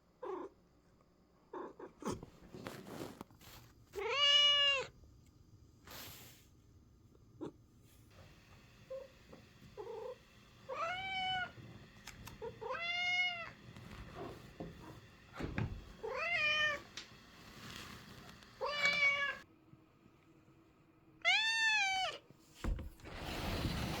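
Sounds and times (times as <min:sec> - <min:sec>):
cat meowing: 0:04.0 - 0:04.9, 0:12.4 - 0:13.6, 0:18.6 - 0:19.4, 0:21.2 - 0:22.2.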